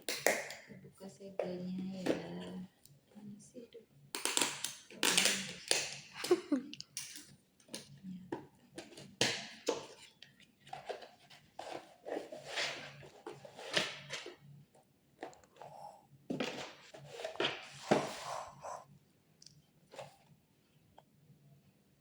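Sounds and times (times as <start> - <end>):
packaging rustling and crinkling: 16.4 - 18.4.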